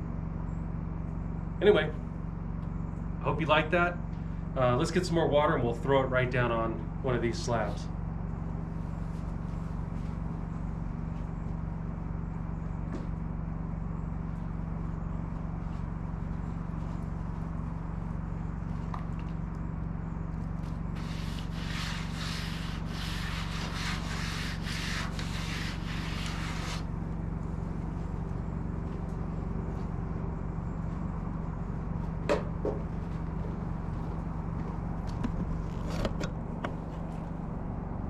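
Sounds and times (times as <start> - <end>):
steady low hum: 0.0 - 38.0
brisk rubbing on wood slab: 21.0 - 26.9.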